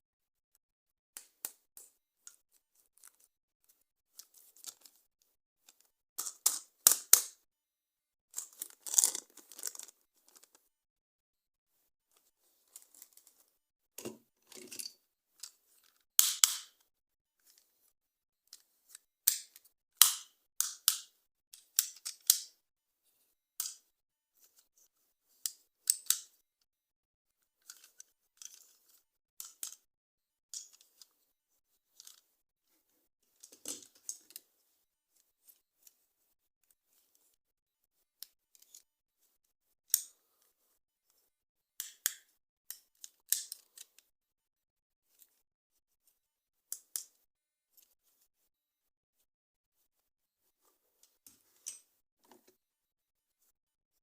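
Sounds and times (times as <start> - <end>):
toy packaging clicks and crackles: 8.3 - 10.6, 27.6 - 29.8.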